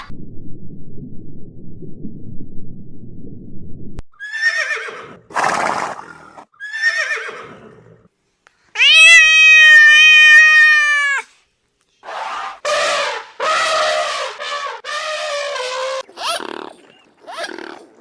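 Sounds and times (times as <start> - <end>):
horse whinnying: 4.1 - 8.0
horse snorting: 5.0 - 6.5.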